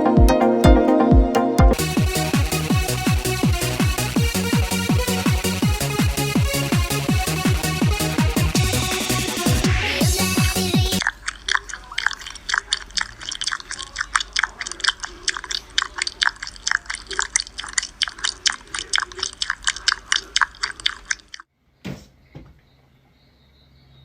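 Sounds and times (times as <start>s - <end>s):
animal chewing crunchy food: 11.0s - 21.5s.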